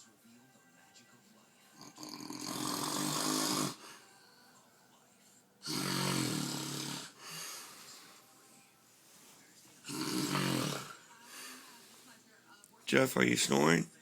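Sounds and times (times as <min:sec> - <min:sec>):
man snoring: 0:01.8 - 0:03.9, 0:05.6 - 0:07.5, 0:09.9 - 0:11.1.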